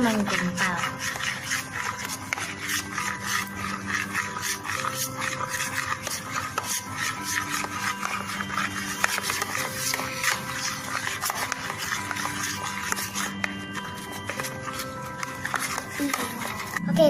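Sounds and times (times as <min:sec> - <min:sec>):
slime wet scraping and clicking: 0:00.0 - 0:16.9.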